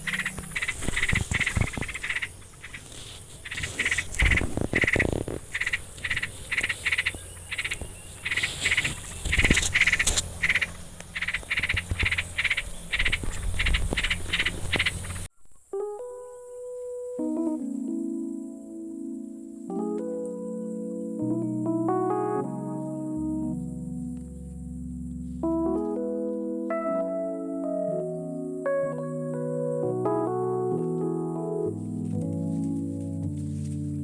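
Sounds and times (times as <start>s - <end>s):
high-pitched insect drone: 0.0s - 15.3s
rapid animal calls: 0.0s - 15.3s.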